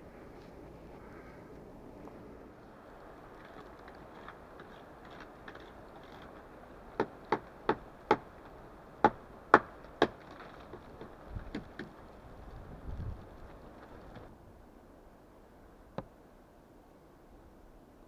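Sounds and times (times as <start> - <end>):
axe chopping wood: 7.0 - 8.3, 9.0 - 11.9.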